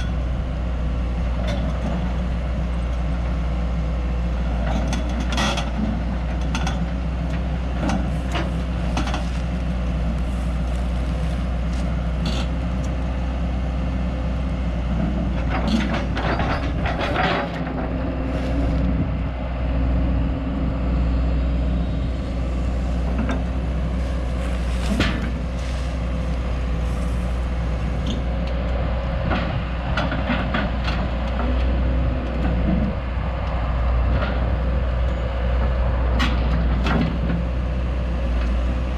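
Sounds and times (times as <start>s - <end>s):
vehicle engine running: 0.0s - 38.9s
clanks and rattles: 4.6s - 9.5s, 14.9s - 18.0s, 22.8s - 27.4s, 29.2s - 31.7s.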